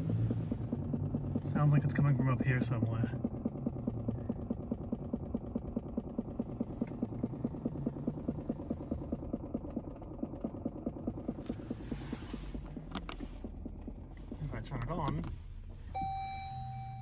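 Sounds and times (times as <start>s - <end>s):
rapid mechanical pulsing: 0.0s - 17.0s
low hum: 15.2s - 17.0s.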